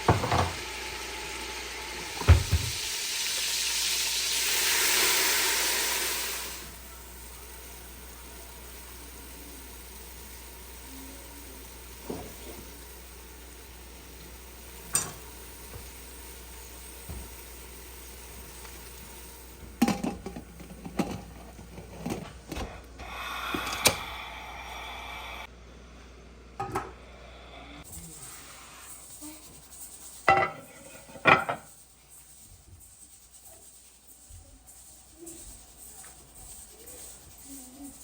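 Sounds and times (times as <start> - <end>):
dishes and utensils clattering: 0.1 - 0.6, 19.8 - 22.7, 30.2 - 31.8.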